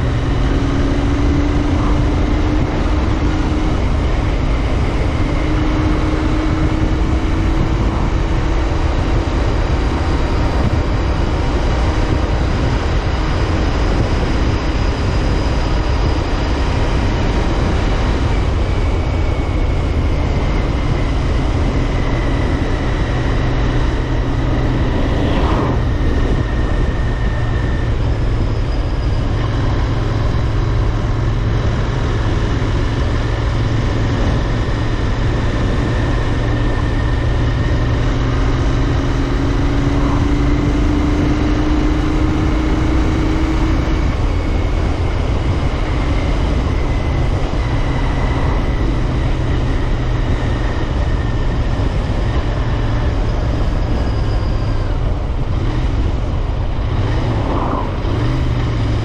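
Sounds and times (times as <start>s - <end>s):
motorcycle engine running: 0.0s - 59.0s
wind and road noise: 0.0s - 59.0s
faint rising tone: 23.4s - 26.6s, 56.8s - 59.0s.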